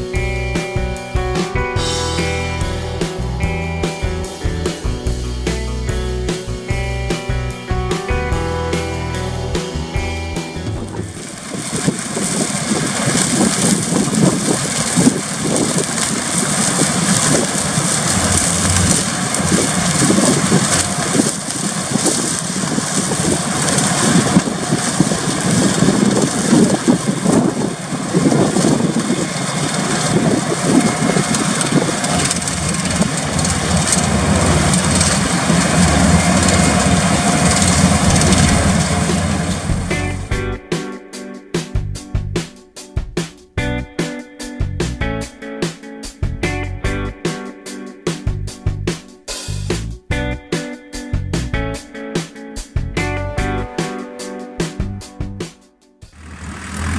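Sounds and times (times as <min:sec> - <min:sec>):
tractor engine running: 0:00.0 - 0:40.7, 0:56.1 - 0:56.9
potato harvester machinery: 0:10.6 - 0:40.4, 0:56.2 - 0:56.9
wind buffeting microphone: 0:10.6 - 0:40.4.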